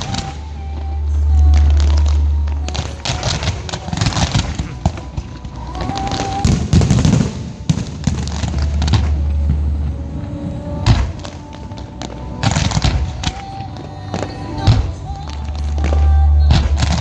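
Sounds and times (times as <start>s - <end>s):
fireworks crackling and booming: 6.1s - 9.2s.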